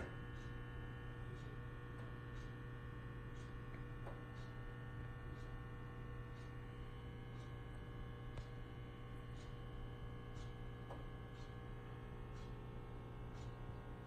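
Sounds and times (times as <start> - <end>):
low mains hum: 0.0 - 14.0
faint light ticks: 1.3 - 2.6, 9.4 - 9.6, 10.3 - 11.6, 12.2 - 13.8.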